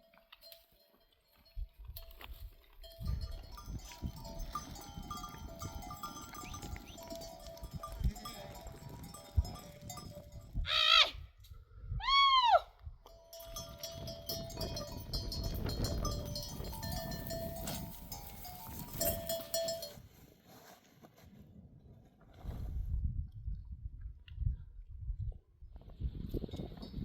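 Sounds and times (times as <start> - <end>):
sheep bells clinking: 0.0 - 10.9, 13.0 - 20.1.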